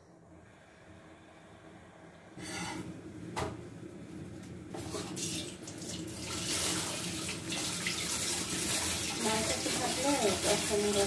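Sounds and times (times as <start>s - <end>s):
tap water running into sink: 5.0s - 11.0s.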